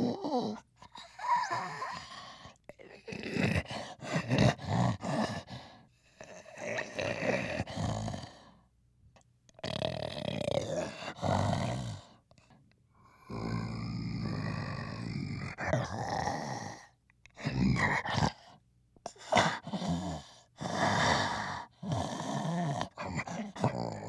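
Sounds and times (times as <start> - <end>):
gorilla breathing and grunting: 19.1 - 24.0.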